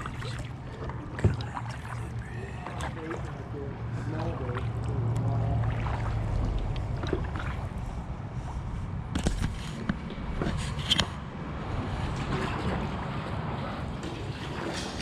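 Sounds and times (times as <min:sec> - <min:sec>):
water trickling: 0:00.0 - 0:08.5
paddle splashes: 0:00.0 - 0:15.0.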